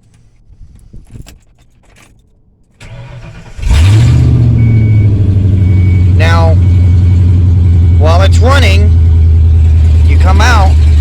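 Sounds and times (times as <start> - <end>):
key and ignition clicks: 0.0 - 3.4
truck engine idling: 4.2 - 11.0.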